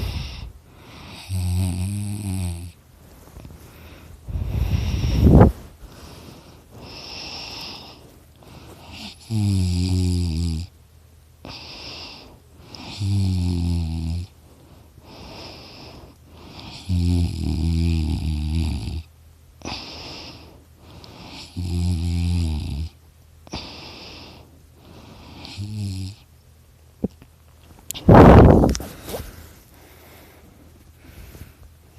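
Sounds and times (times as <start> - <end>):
person snoring: 0.0 - 2.8, 3.8 - 5.5, 8.8 - 10.7, 11.4 - 14.3, 15.1 - 20.5, 21.1 - 24.4, 25.2 - 26.2.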